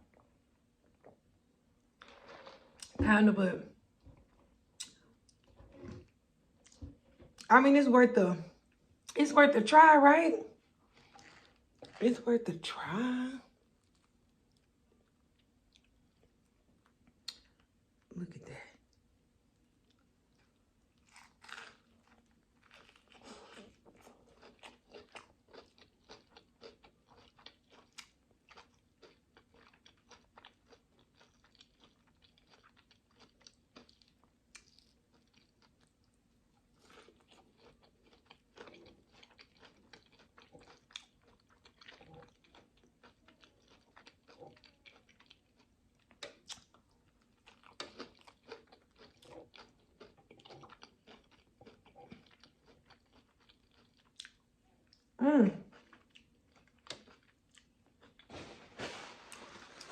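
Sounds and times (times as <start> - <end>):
wet mouth clicks: 4.8 - 5.0
chewing and biting food: 19.9 - 55.0, 55.8 - 59.4.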